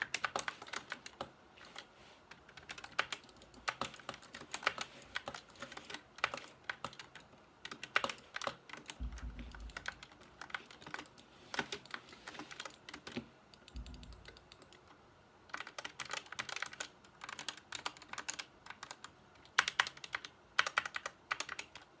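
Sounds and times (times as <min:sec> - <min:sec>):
low thud: 0:09.0 - 0:09.6.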